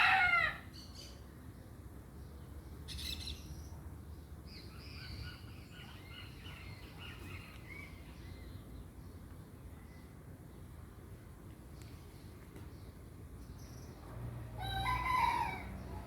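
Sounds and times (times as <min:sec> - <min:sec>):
birds chirping: 0:04.5 - 0:10.8.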